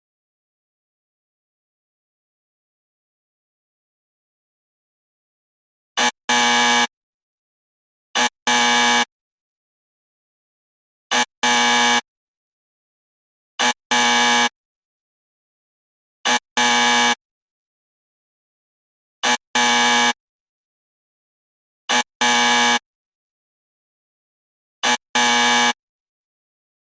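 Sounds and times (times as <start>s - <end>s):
wrong answer buzzer: 6.0s - 6.9s, 8.2s - 9.1s, 11.1s - 12.1s, 13.6s - 14.6s, 16.2s - 17.2s, 19.2s - 20.2s, 21.9s - 22.8s, 24.8s - 25.8s.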